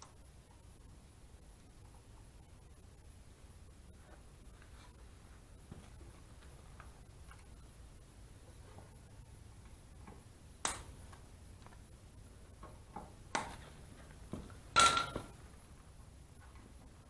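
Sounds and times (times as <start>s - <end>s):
sharp knocks of hard objects: 14.3s - 15.4s
metallic ping: 14.8s - 15.3s.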